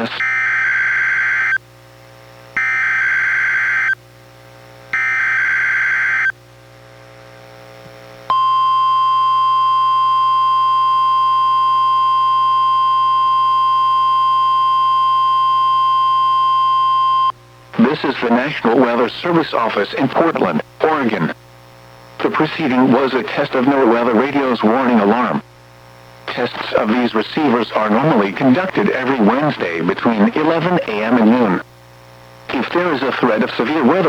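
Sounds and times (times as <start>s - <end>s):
steady warning alarm tone: 0.0s - 1.6s, 2.6s - 4.0s, 4.9s - 6.3s, 8.3s - 17.3s.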